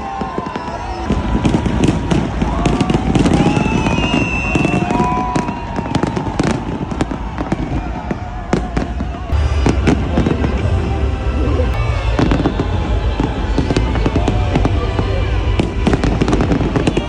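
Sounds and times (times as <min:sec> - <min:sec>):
fireworks bangs: 0:00.0 - 0:17.0
music: 0:00.0 - 0:17.0
voices: 0:00.0 - 0:17.0
continuous low rumble: 0:09.1 - 0:17.0.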